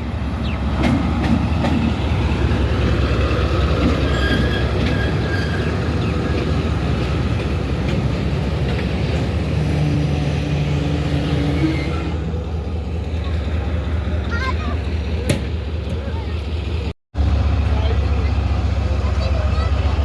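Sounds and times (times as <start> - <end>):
train wheels rumbling on rails: 0.0 - 20.0
faint wheel squeal: 4.1 - 6.5.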